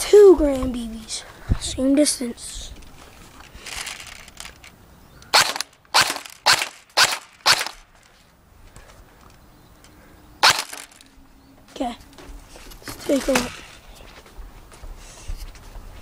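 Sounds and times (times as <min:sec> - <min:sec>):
airsoft gun shots: 0:05.3 - 0:07.8, 0:10.4 - 0:11.0.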